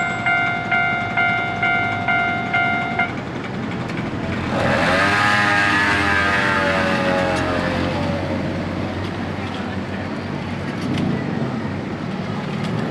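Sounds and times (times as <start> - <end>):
level crossing bell clanging: 0.0 - 3.1
passing vehicle whine: 0.0 - 12.9.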